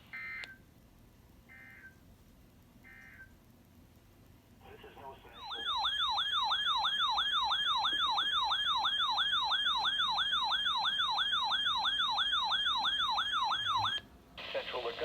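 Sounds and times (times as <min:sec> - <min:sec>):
electronic alert siren whooping: 0:05.4 - 0:14.0.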